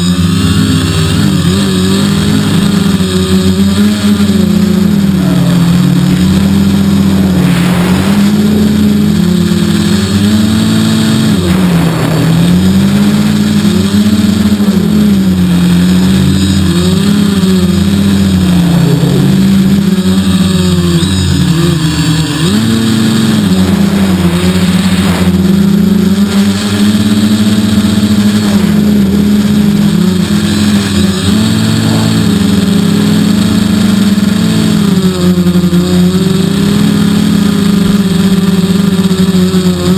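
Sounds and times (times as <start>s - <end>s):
drone motors humming: 0.0s - 39.9s
wind noise: 4.8s - 27.5s.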